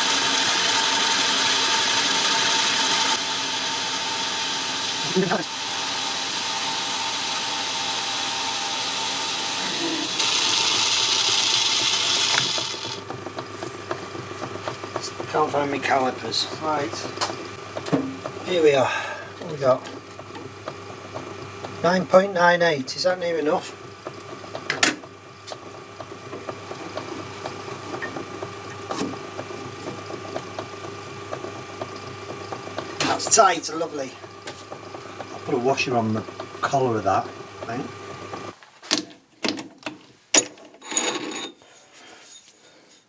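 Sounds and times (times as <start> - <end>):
metal lathe humming: 0.0 - 38.6
metal parts clicking and tapping: 38.9 - 41.6.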